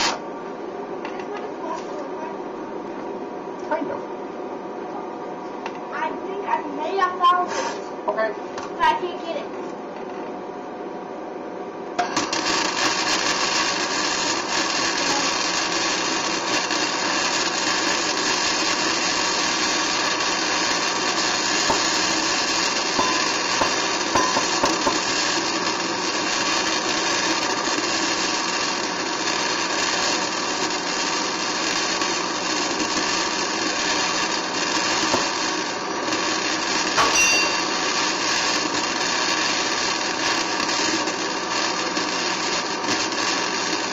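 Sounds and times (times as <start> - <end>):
power tool working on steel: 12.1 - 43.9.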